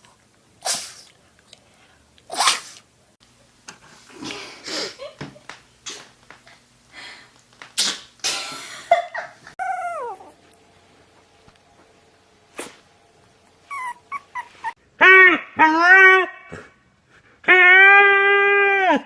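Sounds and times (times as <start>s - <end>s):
puppy sneezing: 0.6s - 1.1s, 2.3s - 2.9s, 7.8s - 8.5s, 12.5s - 12.8s
puppy high cries: 9.6s - 10.4s, 13.7s - 16.5s
puppy whining: 9.6s - 10.5s, 13.6s - 14.8s.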